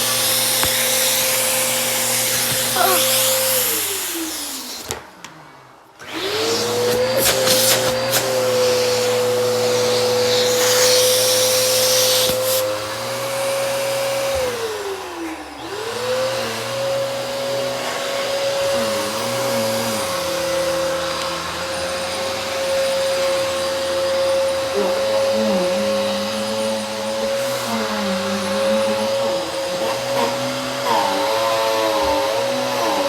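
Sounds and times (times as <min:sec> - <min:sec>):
vacuum cleaner motor whine: 0:00.0 - 0:33.0.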